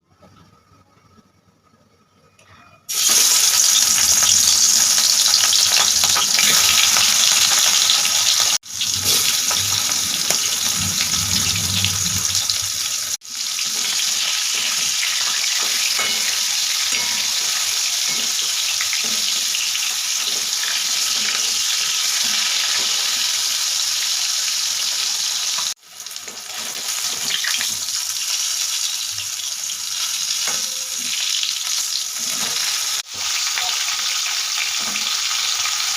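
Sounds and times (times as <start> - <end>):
food sizzling in hot oil: 2.9 - 35.9.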